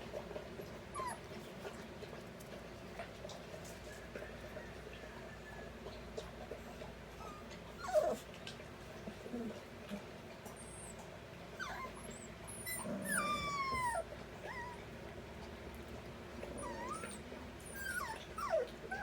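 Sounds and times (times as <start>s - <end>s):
puppies whining: 0.7s - 1.7s, 7.1s - 8.3s, 10.4s - 15.0s, 16.4s - 19.0s.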